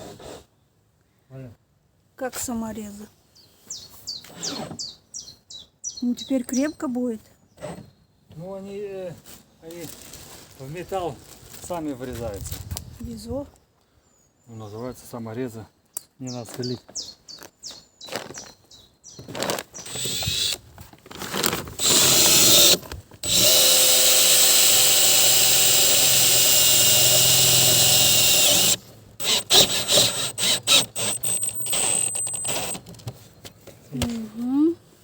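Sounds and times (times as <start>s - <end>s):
power drill driving screws into metal: 19.8s - 20.6s, 21.7s - 32.9s.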